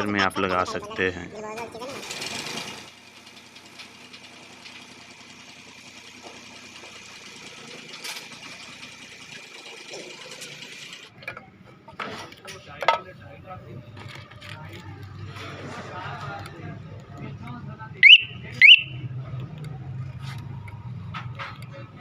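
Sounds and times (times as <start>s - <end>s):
small engine rattling: 1.4s - 11.4s.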